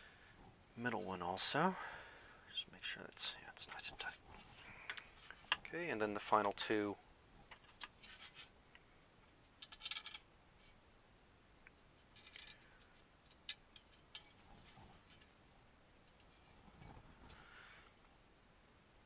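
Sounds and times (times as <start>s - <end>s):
faint scratching: 7.6s - 8.6s.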